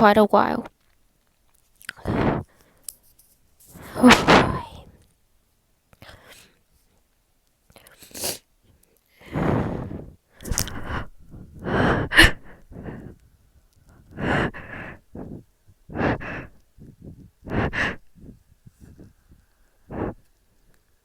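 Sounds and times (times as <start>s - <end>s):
heavy shaky breaths and sighs: 1.9s - 3.0s, 3.6s - 5.1s, 6.0s - 6.7s, 7.7s - 20.9s.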